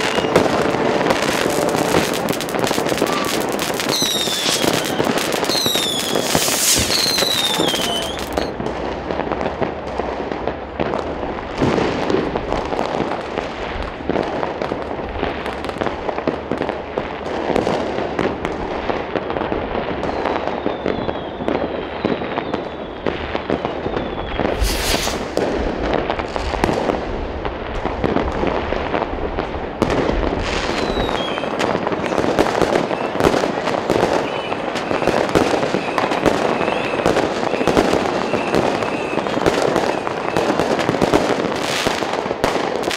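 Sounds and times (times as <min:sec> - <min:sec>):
rocket whistles: 0:00.0 - 0:08.5, 0:20.1 - 0:25.4, 0:30.6 - 0:33.4, 0:34.0 - 0:40.6
fireworks crackling and banging: 0:00.0 - 0:42.9.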